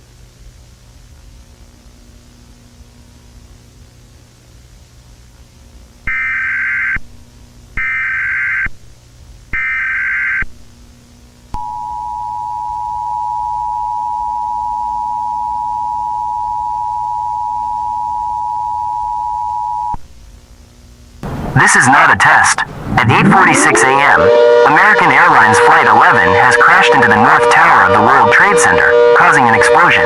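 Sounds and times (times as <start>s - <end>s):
two-tone attention signal: 11.6s - 20.0s, 22.9s - 30.0s
data burst tones: 21.2s - 30.0s.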